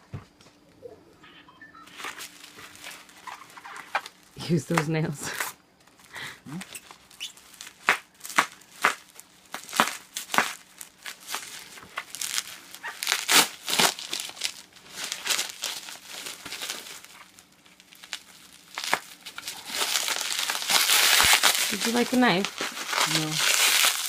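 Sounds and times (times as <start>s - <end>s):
box packaging being torn open: 6.6s - 24.0s.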